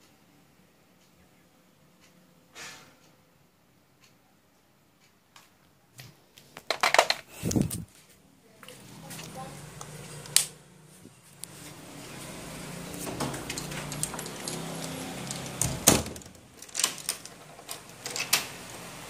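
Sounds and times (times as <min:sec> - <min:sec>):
air conditioner humming: 0:04.6 - 0:19.0.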